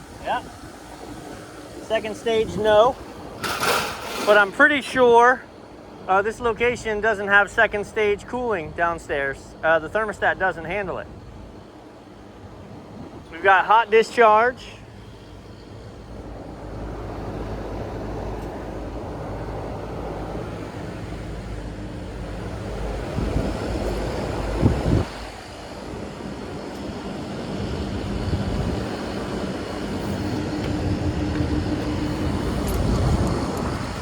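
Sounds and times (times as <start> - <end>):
air conditioner humming: 0.0 - 33.9
loud clatter: 3.4 - 4.5.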